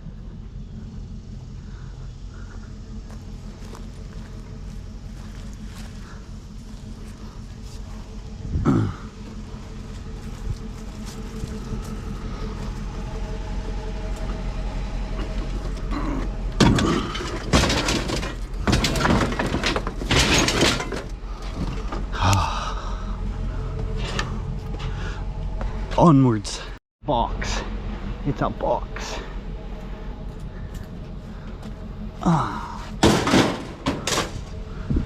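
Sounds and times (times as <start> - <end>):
pickup truck engine humming: 0.0 - 35.0
rough clattering: 15.1 - 22.2, 32.8 - 34.6.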